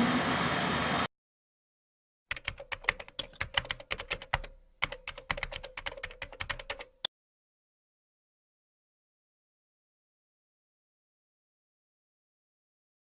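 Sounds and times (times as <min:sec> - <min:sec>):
keyboard typing: 0:02.3 - 0:07.1.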